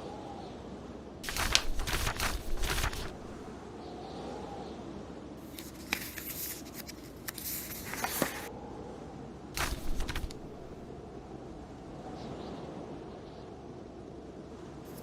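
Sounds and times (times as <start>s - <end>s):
blizzard wind: 0.0s - 15.0s
book pages turning: 1.2s - 3.5s, 5.4s - 8.5s, 9.6s - 10.8s.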